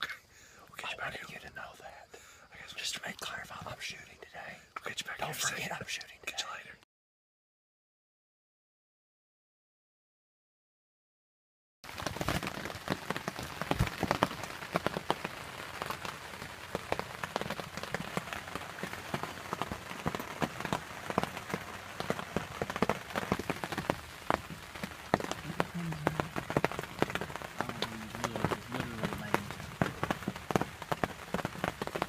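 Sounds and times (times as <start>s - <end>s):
raindrops hitting close: 0.0s - 6.6s, 11.8s - 32.0s
rain falling: 11.8s - 32.0s.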